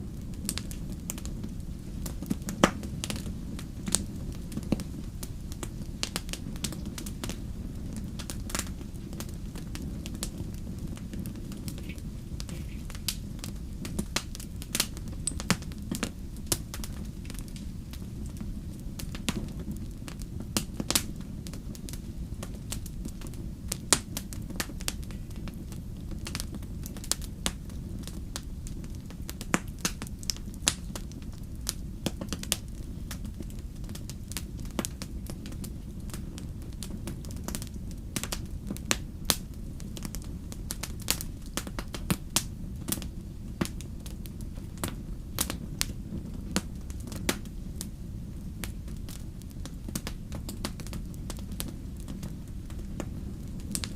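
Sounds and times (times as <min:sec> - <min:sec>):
fire popping and snapping: 0:00.0 - 0:53.9
low rumble of flames: 0:00.0 - 0:53.9.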